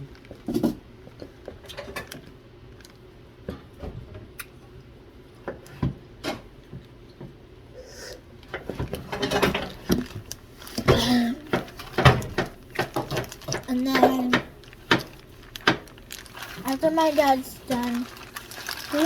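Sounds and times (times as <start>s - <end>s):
dishes and utensils clinking: 10.8s - 15.0s.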